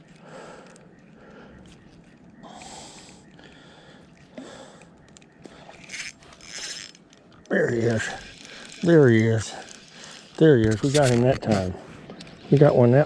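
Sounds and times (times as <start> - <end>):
soft breathing: 0.0 - 6.5, 9.4 - 10.4.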